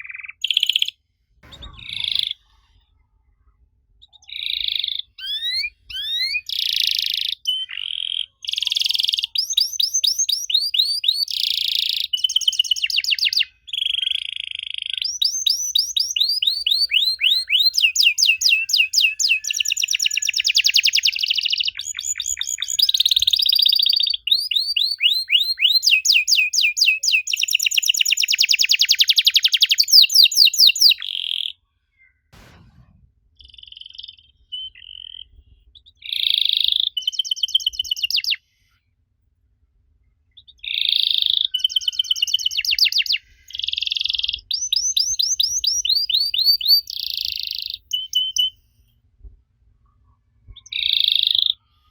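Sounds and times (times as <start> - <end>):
canary singing: 0.0 - 2.4, 4.0 - 31.6, 36.0 - 38.4, 40.4 - 48.6, 50.6 - 51.6
low thump: 1.4 - 2.6, 32.4 - 33.3.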